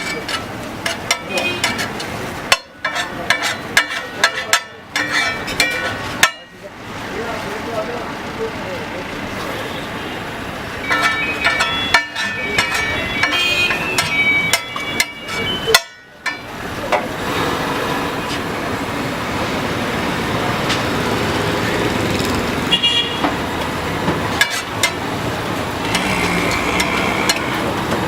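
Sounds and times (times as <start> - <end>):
traffic noise: 0.0 - 28.0
vehicle horns honking: 1.3 - 1.7, 13.0 - 14.2, 22.7 - 23.3.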